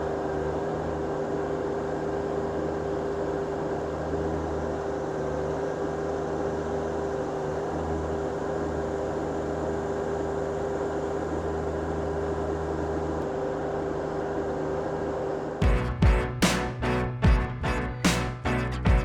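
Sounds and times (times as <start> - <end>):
tractor diesel engine running: 5.7 - 19.0.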